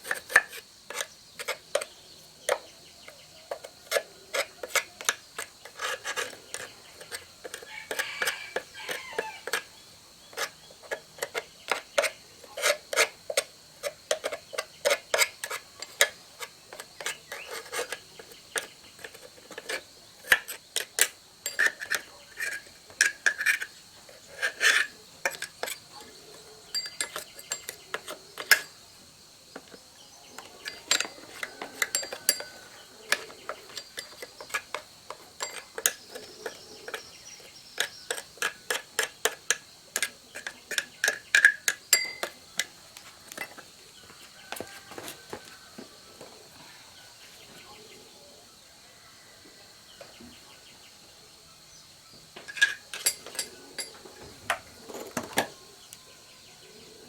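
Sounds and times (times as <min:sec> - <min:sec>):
metal parts clicking and clinking: 0:30.4 - 0:37.0, 0:37.8 - 0:42.7, 0:52.5 - 0:55.6.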